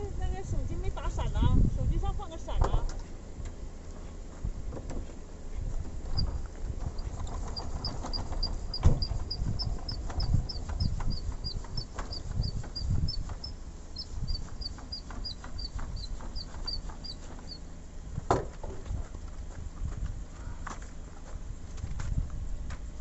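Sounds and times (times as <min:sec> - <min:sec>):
steady low rumble: 0:00.0 - 0:23.0
bird chirping: 0:07.0 - 0:17.7.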